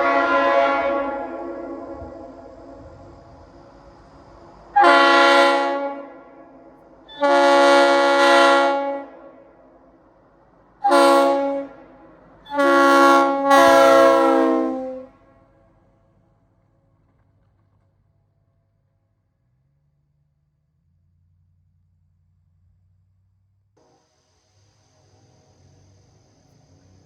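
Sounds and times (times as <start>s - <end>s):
locomotive air horn blasts: 0.0s - 3.3s, 4.7s - 9.8s, 10.8s - 15.5s.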